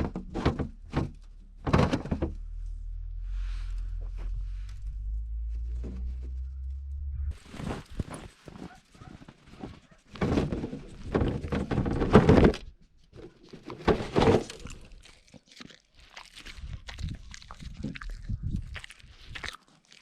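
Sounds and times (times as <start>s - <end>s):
dog chewing food: 14.6s - 20.0s.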